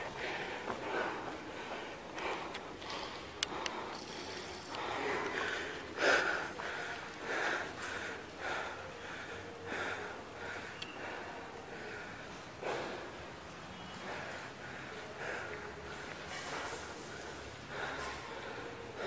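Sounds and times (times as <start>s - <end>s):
person breathing heavily: 0.0s - 19.0s.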